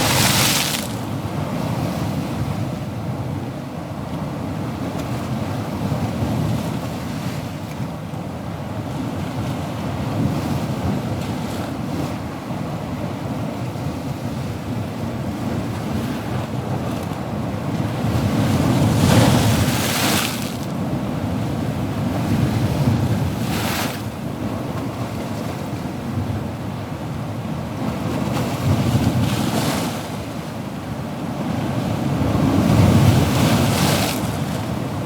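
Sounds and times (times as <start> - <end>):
wave breaking: 0.0 - 1.2
sea waves washing in: 0.0 - 2.5, 17.8 - 24.2, 28.3 - 35.0.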